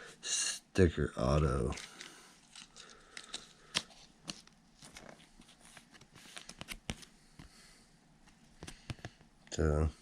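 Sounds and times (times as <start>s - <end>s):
cards rustling and clicking: 1.2s - 7.6s, 8.3s - 9.3s.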